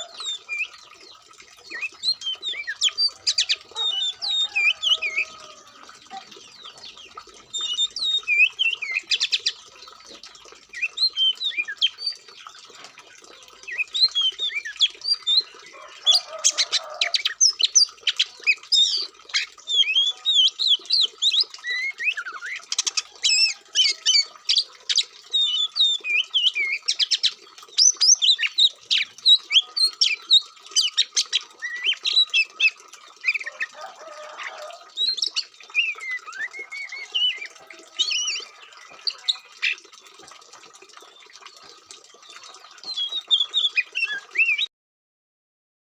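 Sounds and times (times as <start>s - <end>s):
songbird singing: 0.0s - 12.8s.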